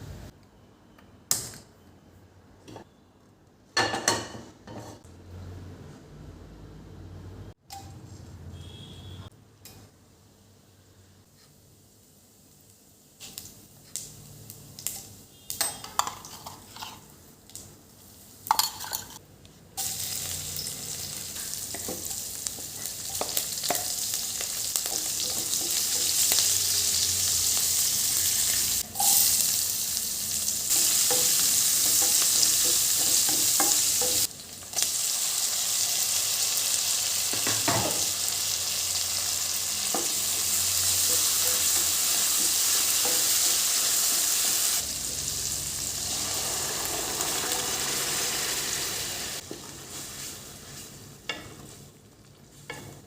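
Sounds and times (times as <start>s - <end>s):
food sizzling in a pan: 11.3s - 19.2s, 19.8s - 53.0s.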